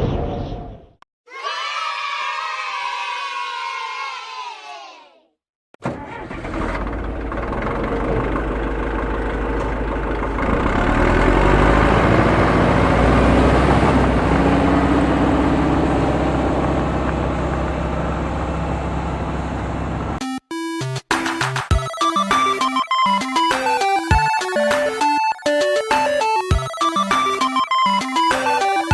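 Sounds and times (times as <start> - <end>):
heavy vehicle engine rumbling: 5.8 - 20.2.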